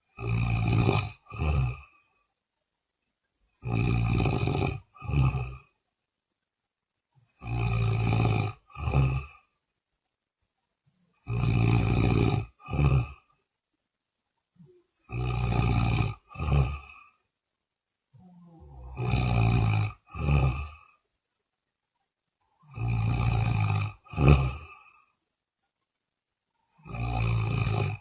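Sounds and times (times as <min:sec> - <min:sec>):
person snoring: 0:00.1 - 0:02.2, 0:03.6 - 0:05.7, 0:07.3 - 0:09.6, 0:11.1 - 0:13.4, 0:14.6 - 0:17.2, 0:18.2 - 0:21.0, 0:22.6 - 0:25.2, 0:26.7 - 0:28.0.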